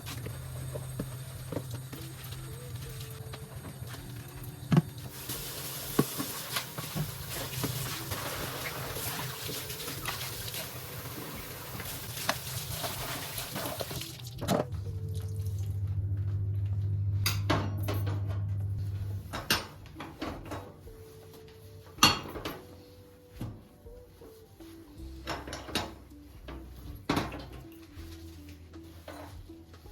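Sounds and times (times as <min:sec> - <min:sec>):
tap water running into sink: 0:00.0 - 0:14.7
low steady hum: 0:14.0 - 0:19.6
knocks of dishes and cutlery: 0:22.0 - 0:22.6.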